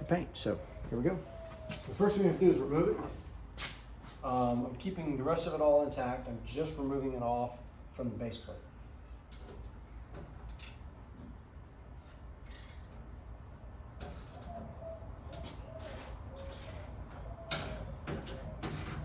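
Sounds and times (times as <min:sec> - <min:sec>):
metal parts and tools clicking: 0:10.5 - 0:10.8, 0:12.0 - 0:13.0, 0:14.0 - 0:14.6, 0:15.8 - 0:19.0.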